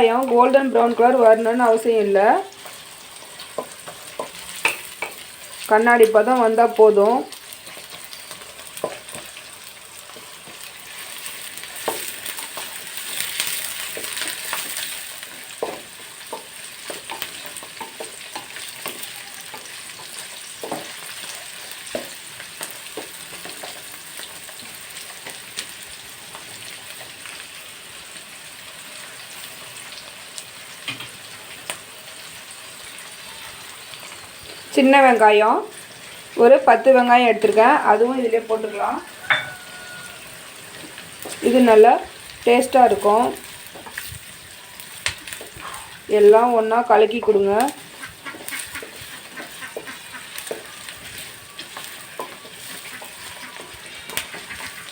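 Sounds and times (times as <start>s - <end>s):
onions sizzling in hot oil: 0.0s - 54.9s
utensil scraping and tapping pan: 39.2s - 39.9s.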